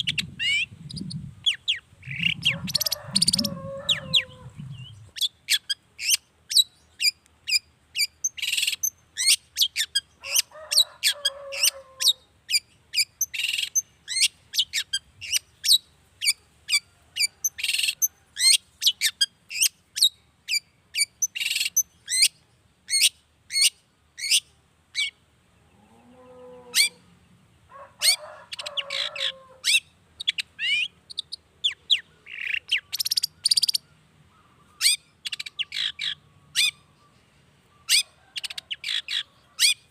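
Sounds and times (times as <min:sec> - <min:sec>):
bird scratchy low phrases: 0:00.0 - 0:06.1.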